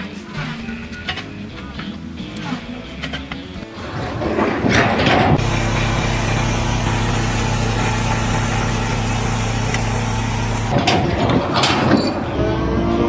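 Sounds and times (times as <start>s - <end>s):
engine running steadily: 0.0s - 12.4s
engine rising in pitch: 3.7s - 13.0s.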